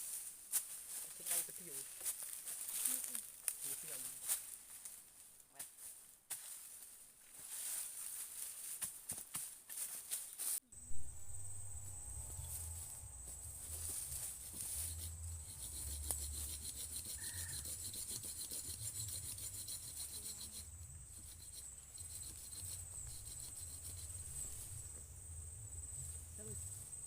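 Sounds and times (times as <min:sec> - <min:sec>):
insects high whine: 0:10.7 - 0:27.0
rasping pulsed insect trill: 0:10.7 - 0:27.0.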